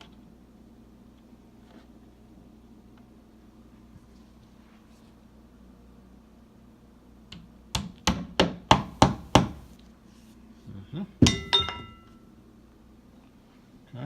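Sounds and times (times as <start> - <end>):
hammer tapping: 7.3 - 9.7, 11.2 - 12.1
hammer knocks with metallic ring: 11.2 - 12.2.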